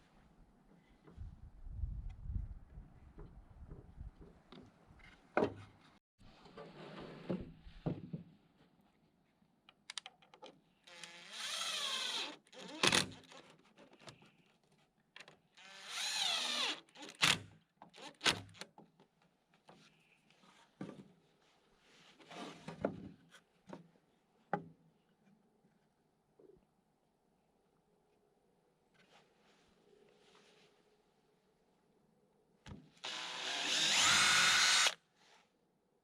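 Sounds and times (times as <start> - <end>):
cordless drill running: 10.9 - 12.4, 33.0 - 35.0.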